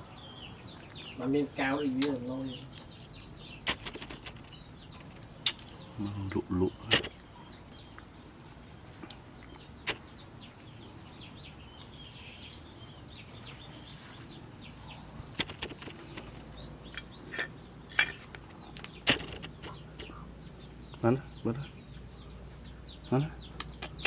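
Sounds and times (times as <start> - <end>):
birds chirping: 0.0 - 24.0
sharp clicks: 2.0 - 5.7, 6.9 - 7.3, 9.5 - 10.1, 15.4 - 17.1, 18.8 - 20.1.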